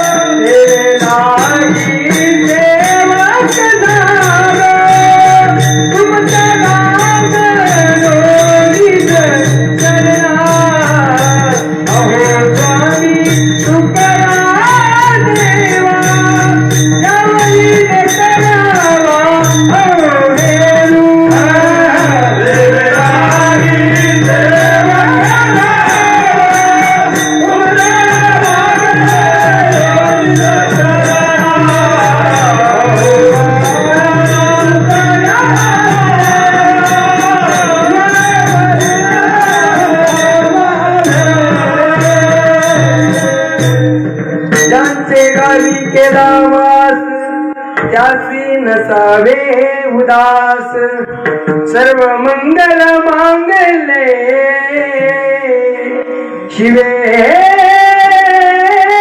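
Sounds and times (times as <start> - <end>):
hand drum beat: 0.0 - 46.2
small cymbal beat: 0.0 - 46.5
man singing devotional song: 0.0 - 59.0
steady held drone: 21.3 - 43.7.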